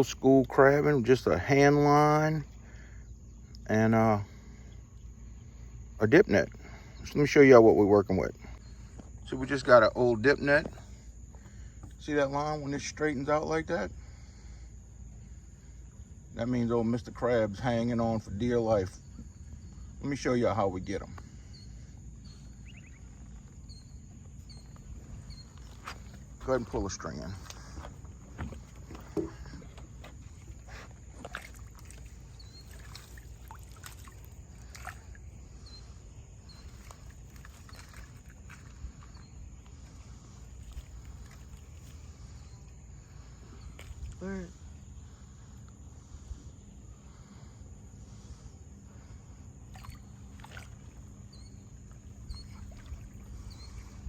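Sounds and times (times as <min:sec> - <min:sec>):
shallow water lapping: 0:04.2 - 0:54.0
faint high chirps: 0:21.1 - 0:26.6.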